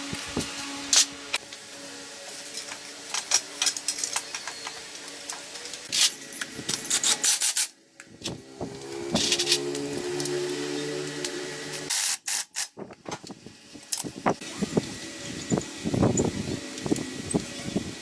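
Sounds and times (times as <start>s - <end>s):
hand tool scraping metal: 9.1s - 10.9s.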